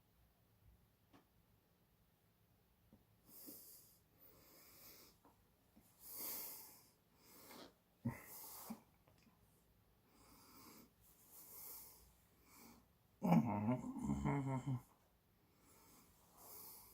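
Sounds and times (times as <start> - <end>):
man breathing through nose: 6.0 - 8.9.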